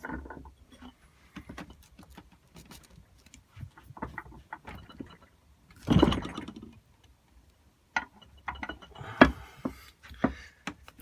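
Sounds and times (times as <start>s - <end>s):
metal pipe knocking and clattering: 0.0s - 1.8s, 3.7s - 6.8s, 7.9s - 10.4s.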